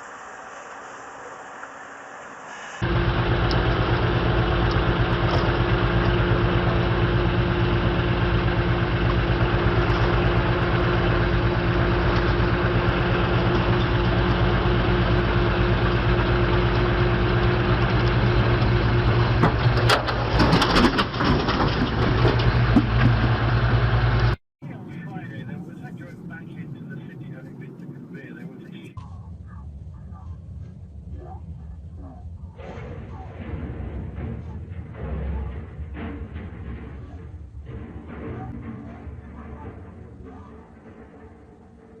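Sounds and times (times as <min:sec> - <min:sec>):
large vehicle engine running: 0:00.0 - 0:42.0
sharp knocks and clatter: 0:17.7 - 0:23.6, 0:32.6 - 0:41.2.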